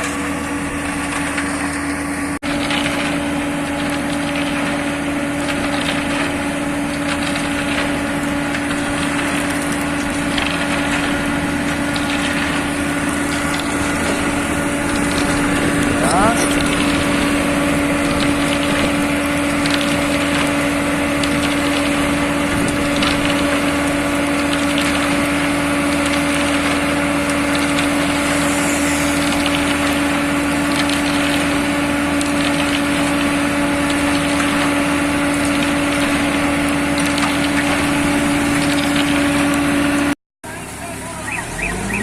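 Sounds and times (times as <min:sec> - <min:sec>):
concrete mixer droning: 0:00.0 - 0:42.0
clicks and rattles: 0:05.4 - 0:28.2.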